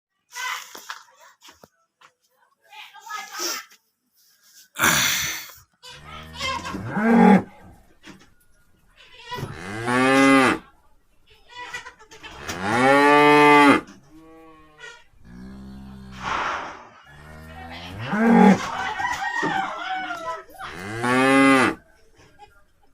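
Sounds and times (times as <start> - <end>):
cattle mooing: 6.0 - 7.5, 9.4 - 10.6, 12.4 - 16.2, 17.1 - 18.7, 20.7 - 21.8.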